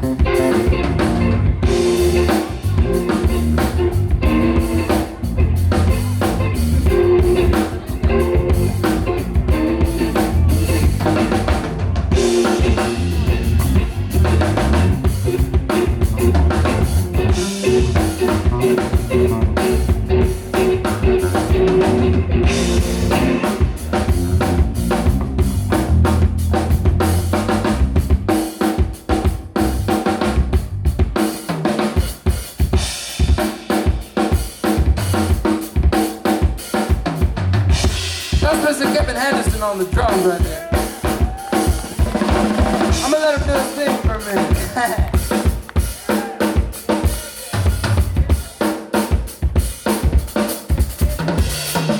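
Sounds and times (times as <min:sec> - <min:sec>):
guitar line: 0:00.0 - 0:28.8, 0:37.7 - 0:50.4
bass: 0:00.0 - 0:51.9
drum kit: 0:00.0 - 0:51.9.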